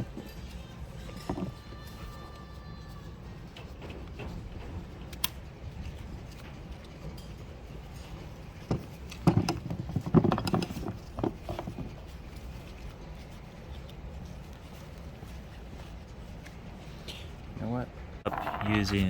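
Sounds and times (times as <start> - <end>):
seatbelt rattling knocks: 8.7 - 11.9.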